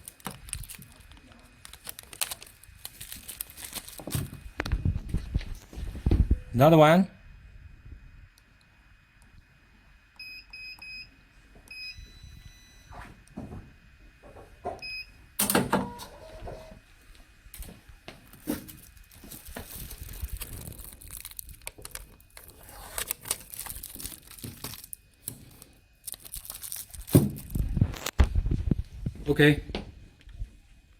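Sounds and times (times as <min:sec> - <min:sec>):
crinkly rustling: 0:00.0 - 0:05.9, 0:18.2 - 0:28.6.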